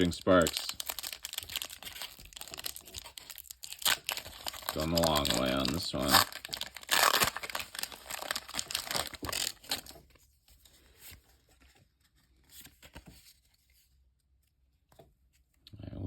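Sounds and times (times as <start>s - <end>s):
foil wrapper tearing: 0.0s - 9.9s.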